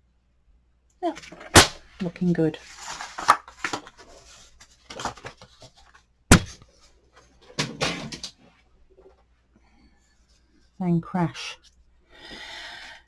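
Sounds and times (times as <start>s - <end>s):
hand knocking camera: 6.3s - 6.6s.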